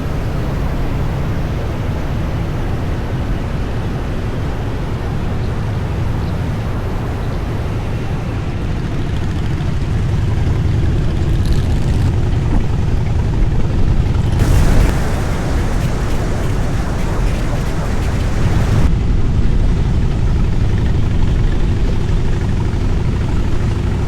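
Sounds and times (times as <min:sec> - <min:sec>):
motorcycle engine rumble: 0:08.8 - 0:24.0
wind noise on microphone: 0:11.1 - 0:24.0.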